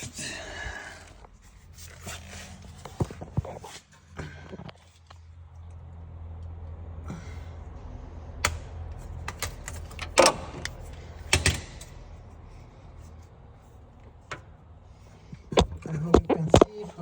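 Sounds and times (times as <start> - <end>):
steady low hum: 0.0 - 17.0
tools and metal parts clanking: 9.0 - 12.2.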